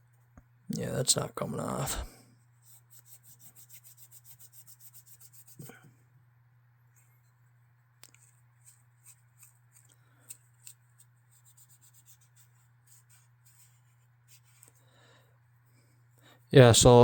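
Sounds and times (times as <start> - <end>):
steady low hum: 0.0 - 17.0
knife part scraping: 8.1 - 12.1.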